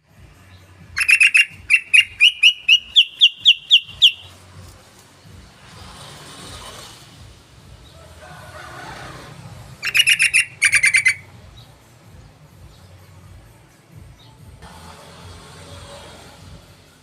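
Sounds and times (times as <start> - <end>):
bird chattering: 1.0 - 4.4, 9.8 - 11.3.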